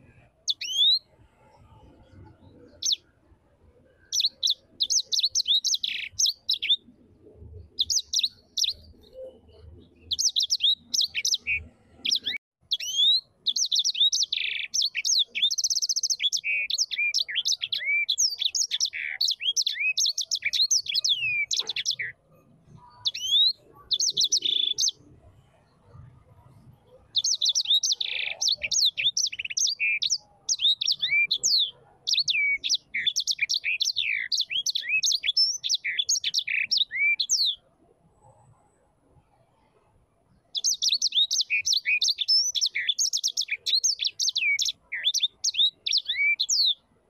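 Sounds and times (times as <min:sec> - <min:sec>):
bird singing chirps and whistles: 0:00.4 - 0:01.1, 0:04.0 - 0:06.8, 0:07.8 - 0:22.2, 0:23.0 - 0:25.0, 0:27.1 - 0:37.6, 0:40.5 - 0:46.8.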